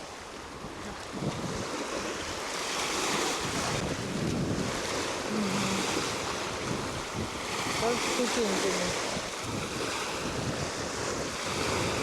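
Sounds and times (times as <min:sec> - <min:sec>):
waves breaking on shore: 0:00.0 - 0:12.0
wind buffeting microphone: 0:00.0 - 0:12.0.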